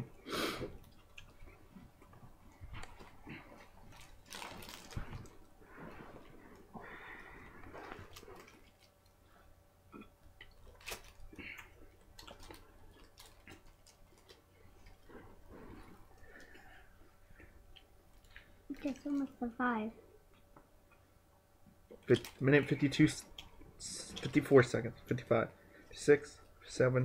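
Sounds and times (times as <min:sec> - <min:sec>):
soft rustles: 0:01.3 - 0:09.4.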